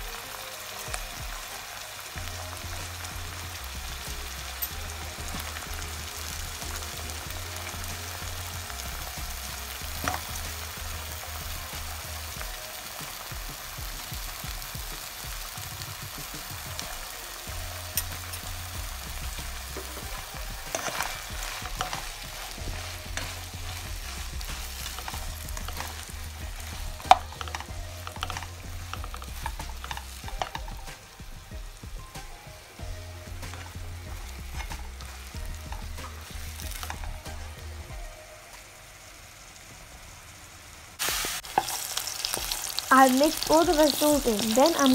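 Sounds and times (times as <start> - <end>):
vegetables sizzling in a pan: 0.0 - 44.9
utensil stirring and scraping: 18.0 - 30.9.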